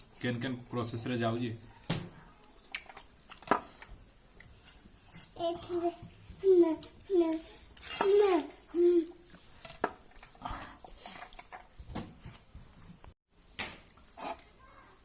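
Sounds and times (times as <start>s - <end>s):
faint clicks and scrapes: 6.8s - 13.2s.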